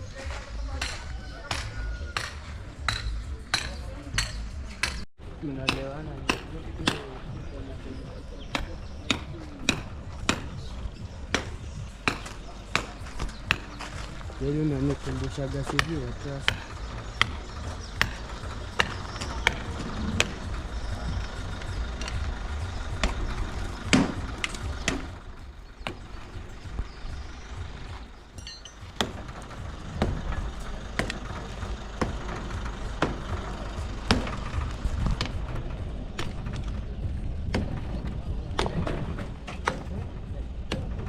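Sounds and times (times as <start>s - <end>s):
low rumble: 13.1s - 41.0s.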